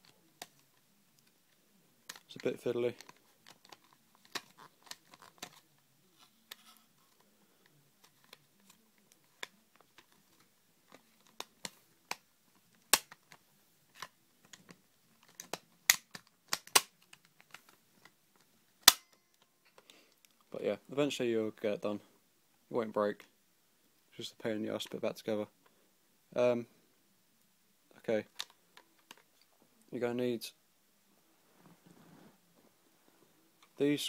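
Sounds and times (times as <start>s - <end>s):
plastic parts clicking and snapping: 2.1s - 5.6s, 8.0s - 20.4s, 28.3s - 29.4s.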